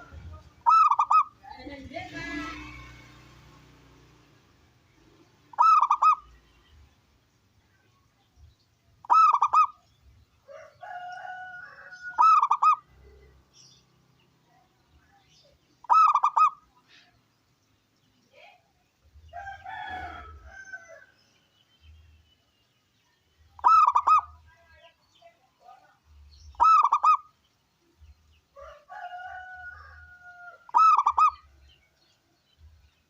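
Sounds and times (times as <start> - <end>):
dove cooing: 0.0 - 1.4, 5.5 - 6.3, 9.0 - 9.8, 12.0 - 13.3, 15.8 - 16.6, 23.6 - 24.4, 26.6 - 27.3, 30.7 - 31.4
faint longer bird calls: 5.5 - 6.8, 9.0 - 9.9, 15.2 - 17.3, 23.5 - 24.5, 26.4 - 27.5, 29.8 - 32.2.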